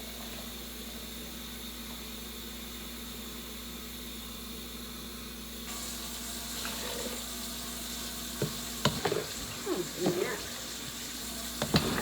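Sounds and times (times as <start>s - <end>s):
watery hiss: 5.7s - 12.0s.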